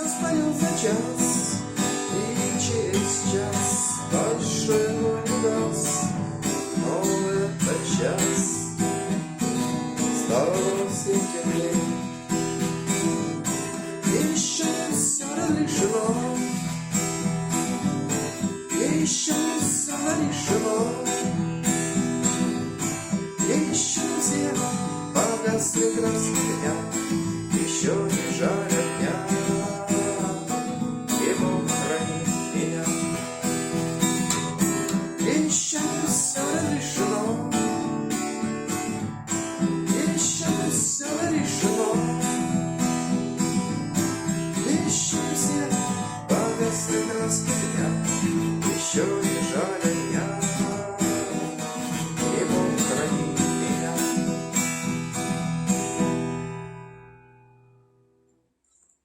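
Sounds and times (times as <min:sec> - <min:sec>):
acoustic guitar strumming: 0:00.0 - 0:58.2.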